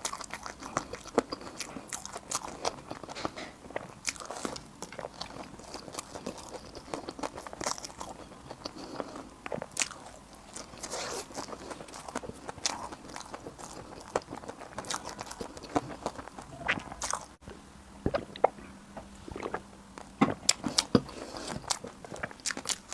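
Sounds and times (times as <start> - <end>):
biting and chewing food: 0.0 - 22.9
crunchy mouth clicks: 18.1 - 22.9.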